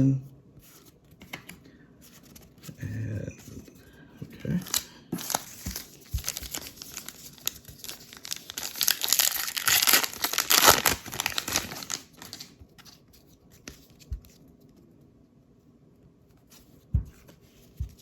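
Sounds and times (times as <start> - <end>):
wrapper tearing and crinkling: 4.6 - 12.6.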